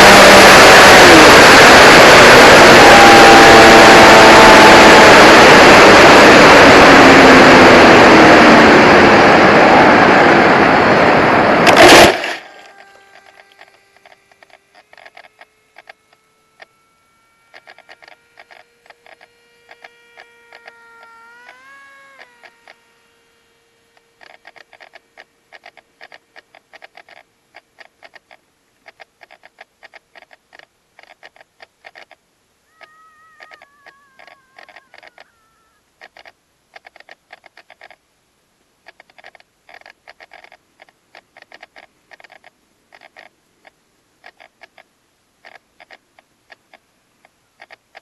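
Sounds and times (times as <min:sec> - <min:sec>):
wind noise: 0:00.0 - 0:13.5
quadcopter motors and propellers: 0:00.0 - 0:38.0, 0:38.9 - 0:46.8
faint scattered clicks: 0:12.4 - 0:16.7, 0:17.5 - 0:21.6, 0:23.9 - 0:32.2, 0:32.8 - 0:35.4, 0:38.8 - 0:48.0
faint steady tone: 0:12.4 - 0:26.4.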